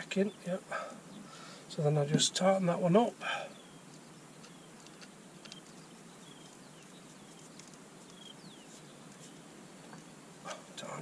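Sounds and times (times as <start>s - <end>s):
bird chirps: 2.7s - 10.8s.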